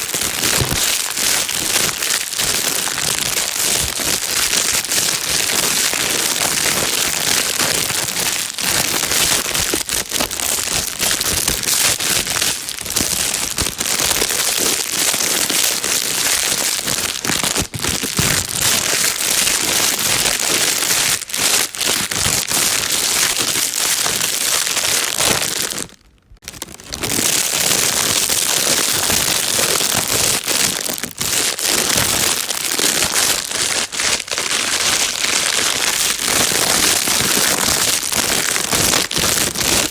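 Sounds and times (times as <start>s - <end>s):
plastic bag crinkling: 0.0s - 39.9s.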